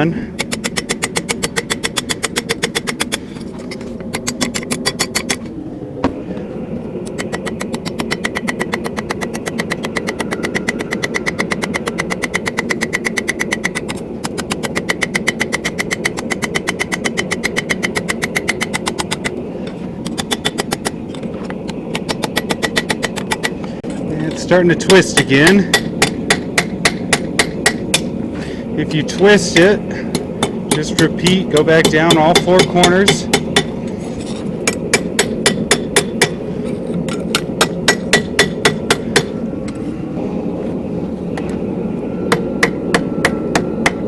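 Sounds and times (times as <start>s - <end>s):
steady low hum: 0.0s - 44.0s
hammer striking steel on anvil: 24.8s - 28.1s, 30.1s - 33.7s, 37.3s - 39.3s.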